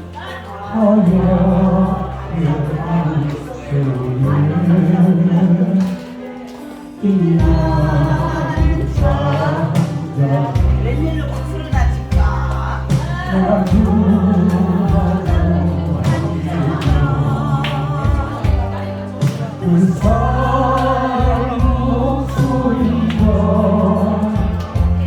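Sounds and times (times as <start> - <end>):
musical accompaniment with bass: 0.0 - 25.0
person singing with vibrato: 0.0 - 25.0.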